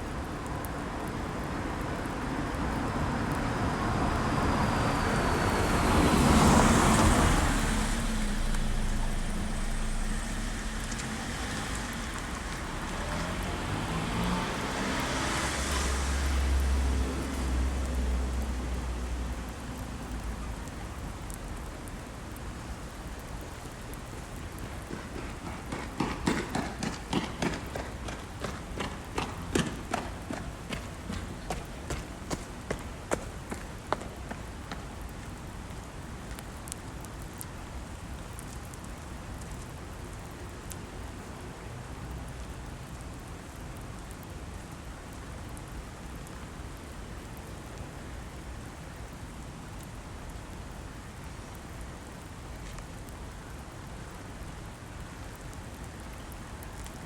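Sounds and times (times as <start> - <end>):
cars passing on wet road: 0.0 - 57.0
steady rain: 0.0 - 57.0
running footsteps: 23.4 - 35.4.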